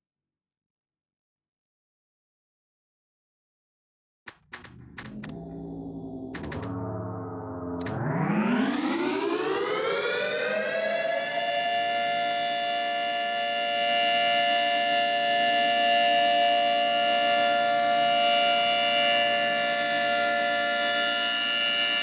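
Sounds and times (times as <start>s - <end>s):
tornado siren: 5.0s - 22.0s.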